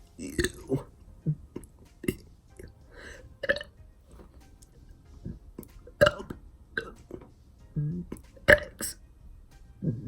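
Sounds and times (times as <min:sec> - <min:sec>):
boy burping: 0:00.2 - 0:02.7, 0:03.4 - 0:03.7, 0:06.0 - 0:07.0, 0:07.8 - 0:09.0.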